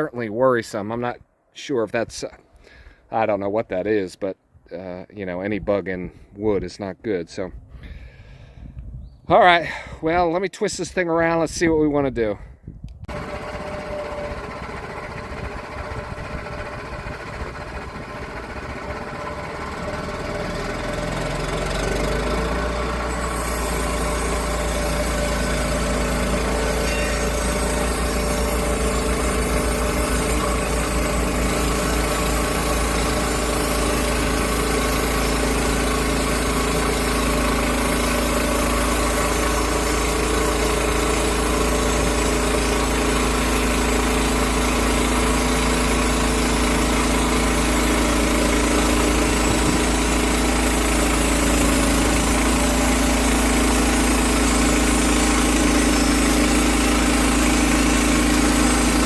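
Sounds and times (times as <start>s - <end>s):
petrol engine revving up: 13.1s - 59.0s.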